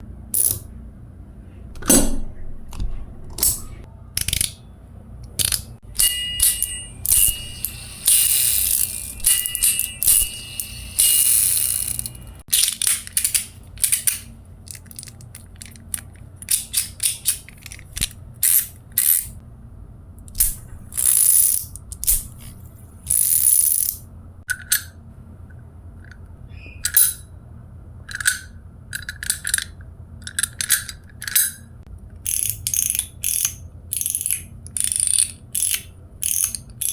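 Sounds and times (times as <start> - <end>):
metallic clicks and snaps: 2.7 - 4.6, 5.2 - 7.4, 11.0 - 19.3, 28.1 - 36.9
fidget toy whirring: 5.3 - 15.0, 15.6 - 19.4, 20.3 - 24.0, 32.2 - 36.9
faint ringing tones: 6.0 - 12.4.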